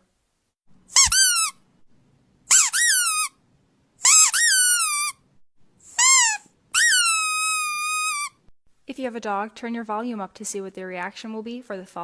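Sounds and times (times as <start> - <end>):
squeaky dog toy squeaking: 0.9 - 1.6, 2.5 - 3.4, 4.0 - 8.5.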